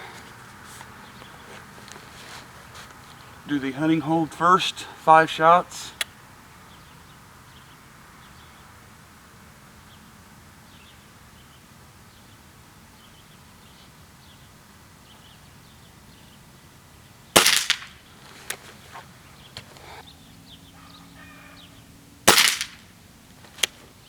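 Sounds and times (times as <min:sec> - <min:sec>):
air rifle shot: 0:17.4 - 0:18.0, 0:22.3 - 0:22.9.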